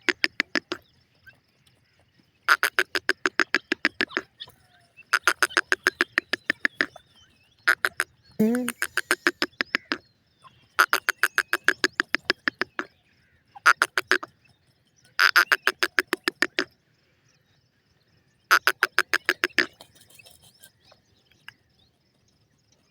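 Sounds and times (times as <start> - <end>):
bird chattering: 2.5 - 4.3, 5.1 - 7.0, 7.7 - 10.0, 10.8 - 12.9, 13.6 - 14.3, 15.2 - 16.7, 18.5 - 19.8.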